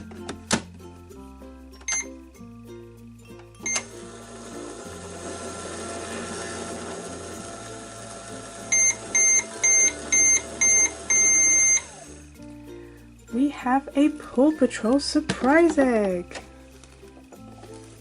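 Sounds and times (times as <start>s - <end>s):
soft background music: 0.0s - 18.0s
toy microwave humming: 3.6s - 12.2s.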